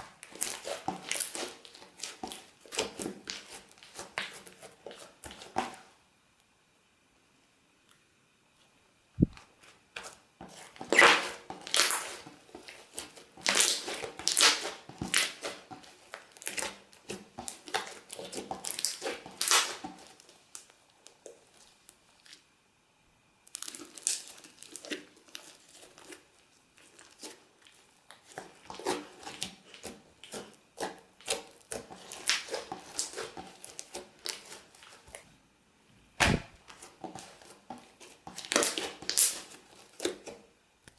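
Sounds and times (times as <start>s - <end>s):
slime squeezed crackling: 0.0s - 5.4s, 10.6s - 22.4s, 23.5s - 35.2s, 36.2s - 40.3s
sharp snap: 36.2s - 36.6s.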